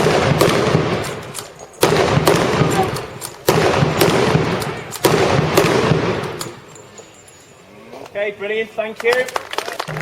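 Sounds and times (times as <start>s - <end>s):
gunfire bursts: 0.0s - 6.7s.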